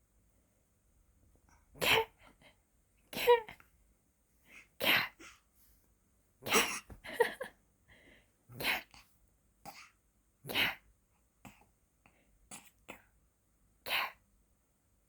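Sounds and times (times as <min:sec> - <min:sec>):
woman laughing: 0:07.0 - 0:07.5.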